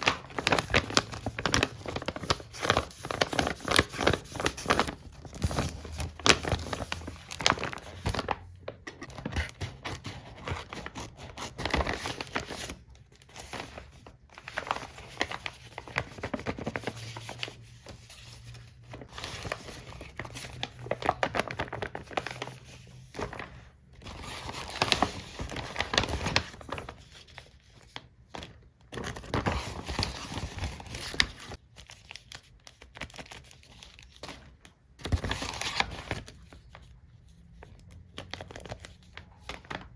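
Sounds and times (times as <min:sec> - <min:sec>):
packaging crinkling and tearing: 0:00.0 - 0:17.7, 0:24.0 - 0:36.8.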